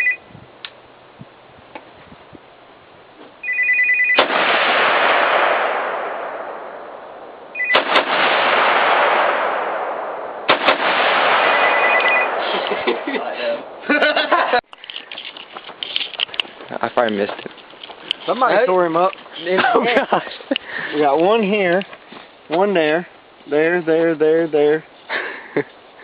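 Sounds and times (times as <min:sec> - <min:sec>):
short electronic beeping: 0:00.0 - 0:00.3, 0:07.6 - 0:07.8, 0:11.5 - 0:12.4
rifle shots: 0:04.1 - 0:13.8.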